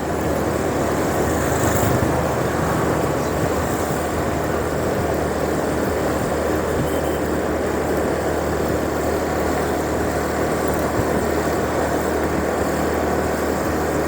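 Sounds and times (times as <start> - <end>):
wind noise on microphone: 0.0 - 7.9
motorbike engine running: 0.0 - 12.1.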